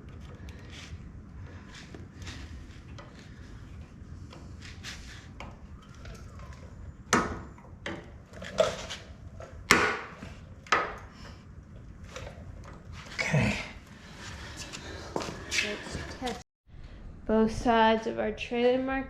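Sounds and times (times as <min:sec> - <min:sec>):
sharp knocks: 0:09.7 - 0:11.0.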